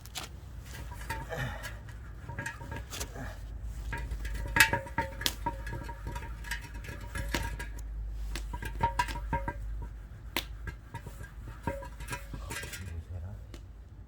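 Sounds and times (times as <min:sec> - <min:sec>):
hot pot lid clicking and popping: 0:03.9 - 0:12.8.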